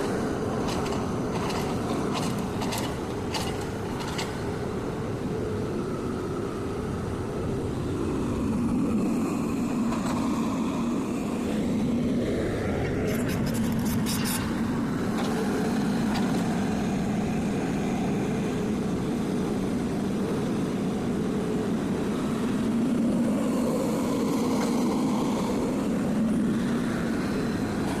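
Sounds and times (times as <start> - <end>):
excavator diesel engine droning: 0.0 - 7.2.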